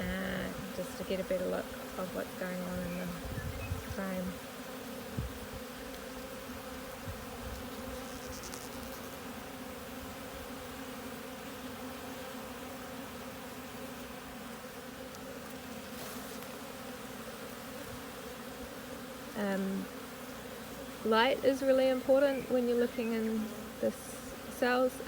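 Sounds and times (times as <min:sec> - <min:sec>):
honeybees buzzing: 0:00.0 - 0:25.0.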